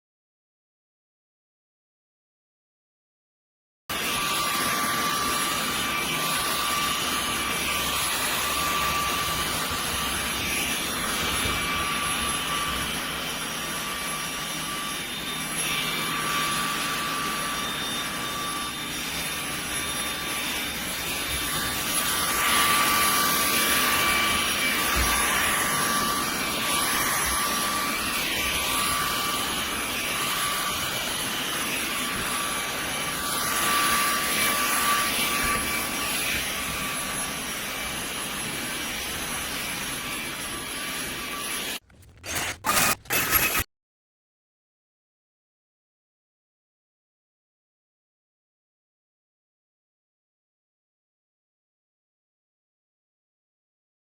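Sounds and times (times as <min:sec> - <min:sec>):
handheld vacuum motor whine: 0:03.9 - 0:43.7.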